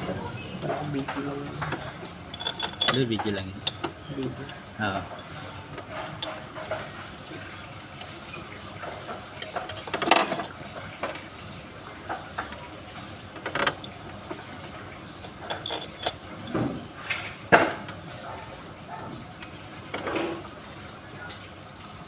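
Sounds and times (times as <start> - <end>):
metallic tool clanks: 0.6 - 11.2, 15.2 - 18.5.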